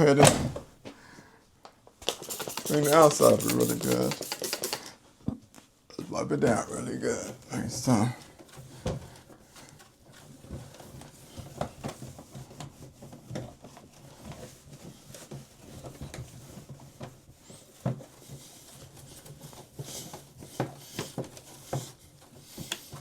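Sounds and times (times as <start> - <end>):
cloth wiping and rubbing: 2.0 - 4.9.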